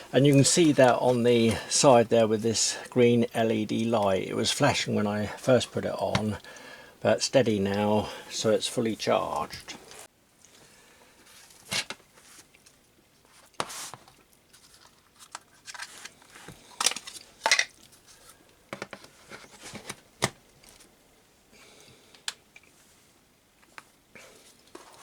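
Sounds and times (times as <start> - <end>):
plastic tool parts clicking and scraping: 13.9 - 18.0.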